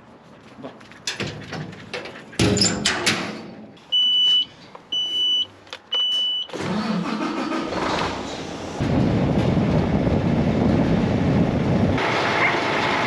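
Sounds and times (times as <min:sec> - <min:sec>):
electronic warning beeps: 0:03.9 - 0:06.6
engine starting and running: 0:06.5 - 0:13.0.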